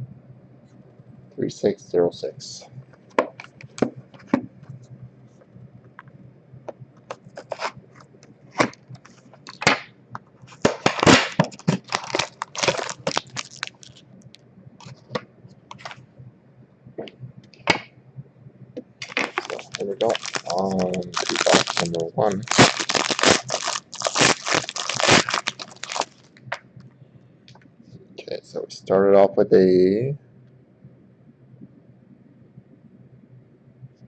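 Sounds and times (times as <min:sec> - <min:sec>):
plastic shrink wrap tearing: 0:07.3 - 0:07.8, 0:10.5 - 0:14.0, 0:19.0 - 0:26.6.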